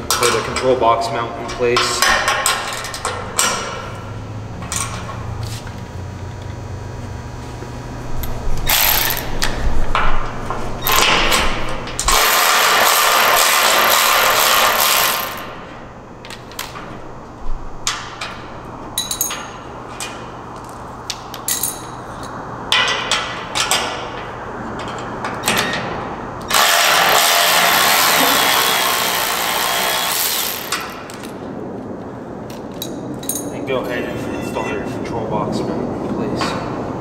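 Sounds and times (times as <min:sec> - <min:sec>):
power tool running: 0:08.6 - 0:09.5, 0:12.0 - 0:15.6, 0:26.5 - 0:31.0.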